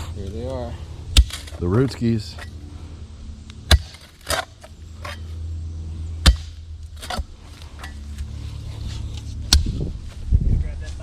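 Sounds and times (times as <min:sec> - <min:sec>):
steady low hum: 0:00.0 - 0:11.0
digging tool chopping into soil: 0:01.1 - 0:01.6, 0:03.6 - 0:05.3, 0:06.2 - 0:08.2.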